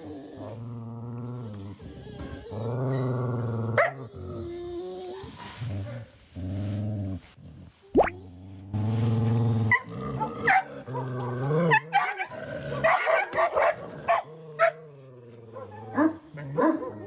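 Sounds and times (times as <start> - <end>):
dogs yipping and barking: 1.4 - 5.6, 9.7 - 11.0, 11.7 - 17.0
dogs growling: 8.8 - 17.0.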